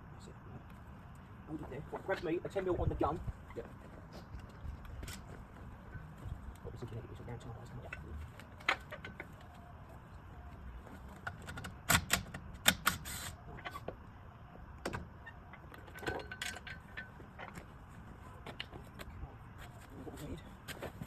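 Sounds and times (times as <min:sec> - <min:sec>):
metal tools clinking: 0:15.8 - 0:17.6.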